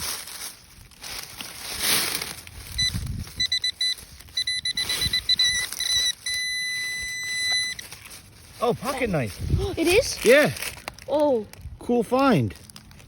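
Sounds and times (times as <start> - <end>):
scraping and rustling of dirt: 0.0 - 13.0
metal detector beeping: 2.7 - 8.1.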